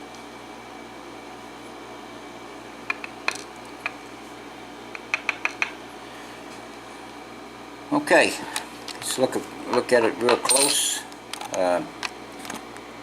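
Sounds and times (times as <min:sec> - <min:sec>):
fan-like hum: 0:00.0 - 0:13.0
metal lock parts clicking: 0:10.3 - 0:10.8.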